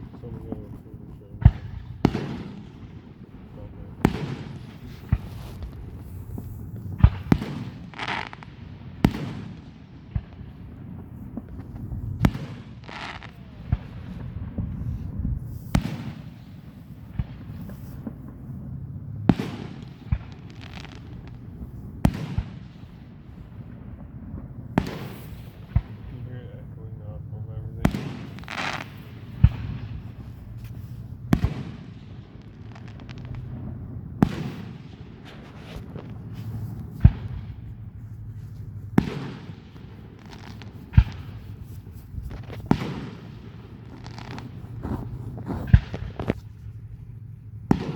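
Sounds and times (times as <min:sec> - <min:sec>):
fireworks bangs: 0:00.0 - 0:47.9
low rumble: 0:41.0 - 0:47.9.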